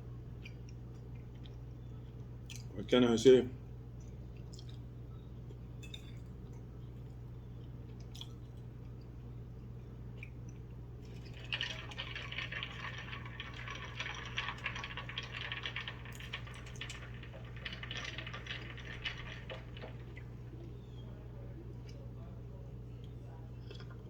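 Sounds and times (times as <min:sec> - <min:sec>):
eating close to microphone: 0:23.0 - 0:24.0.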